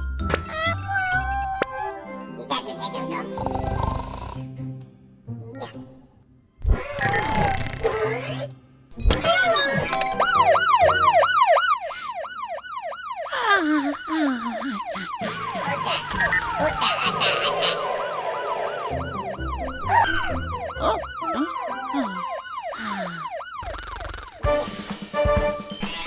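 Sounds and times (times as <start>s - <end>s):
music: 0.0s - 11.5s, 15.7s - 22.4s, 24.4s - 26.0s
cartoon sound effects: 0.3s - 3.4s, 6.7s - 11.2s, 11.8s - 12.3s, 13.3s - 24.8s
cartoon siren wail: 0.5s - 2.5s, 9.1s - 24.7s.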